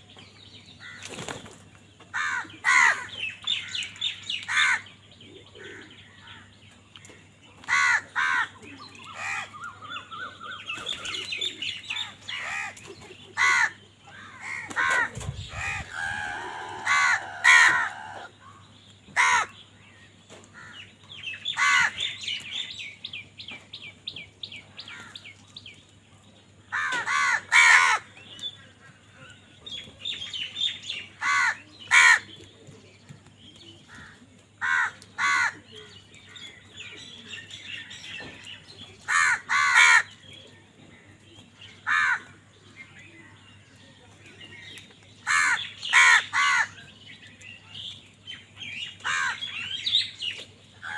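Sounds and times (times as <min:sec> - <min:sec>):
crows cawing: 0:02.1 - 0:03.9, 0:04.5 - 0:04.9, 0:07.7 - 0:08.6, 0:09.2 - 0:09.7, 0:13.4 - 0:18.3, 0:19.1 - 0:19.6, 0:20.5 - 0:20.9, 0:21.5 - 0:22.1, 0:26.7 - 0:28.1, 0:31.2 - 0:32.3, 0:33.9 - 0:35.9, 0:39.1 - 0:40.2, 0:41.8 - 0:42.4, 0:45.2 - 0:46.8, 0:49.0 - 0:49.6.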